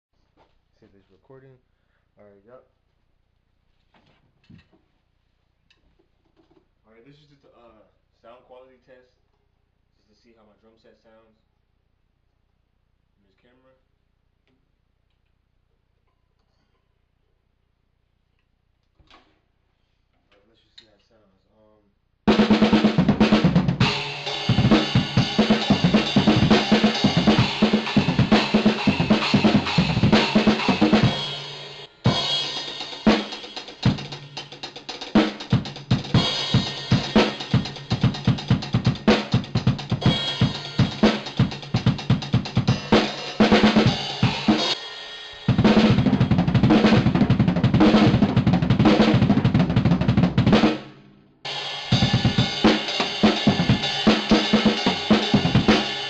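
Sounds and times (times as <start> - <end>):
drum kit played fast: 22.3 - 56.0.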